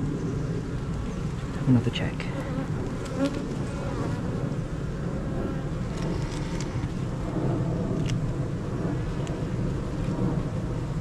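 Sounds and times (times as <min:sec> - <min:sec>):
honey bees buzzing: 0:01.3 - 0:06.2.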